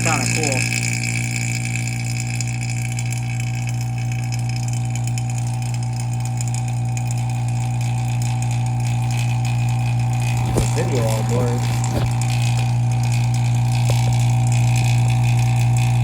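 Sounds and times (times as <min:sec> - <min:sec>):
vacuum pump humming: 0:09.8 - 0:16.0.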